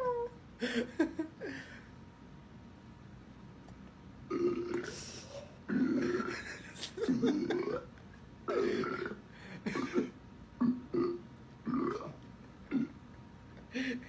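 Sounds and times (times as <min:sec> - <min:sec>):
person burping: 0:04.3 - 0:05.1, 0:05.7 - 0:06.5, 0:07.1 - 0:07.9, 0:08.5 - 0:13.0.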